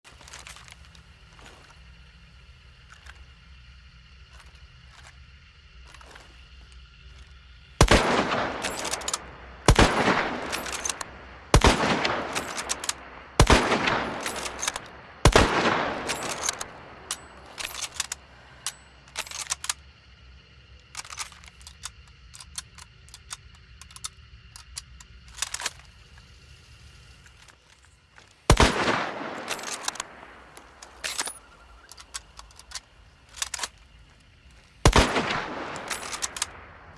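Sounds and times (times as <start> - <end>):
rifle shots with rolling echo: 7.8 - 18.2, 28.5 - 31.5, 34.8 - 36.9.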